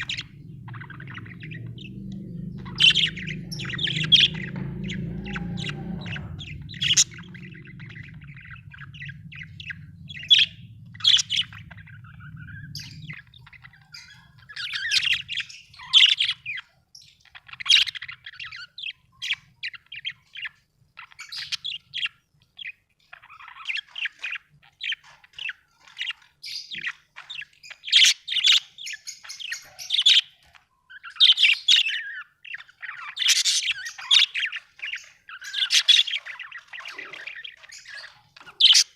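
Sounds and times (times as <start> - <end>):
low steady hum: 0.0 - 27.3
budgerigars chirping and chattering: 0.0 - 38.9.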